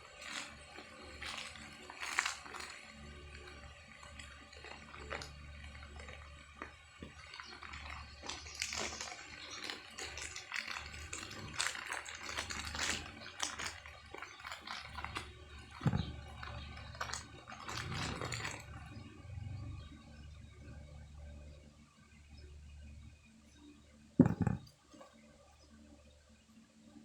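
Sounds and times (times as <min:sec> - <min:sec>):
packaging clicks taps and rustles: 0:00.0 - 0:18.8
faint low hum: 0:00.0 - 0:27.0.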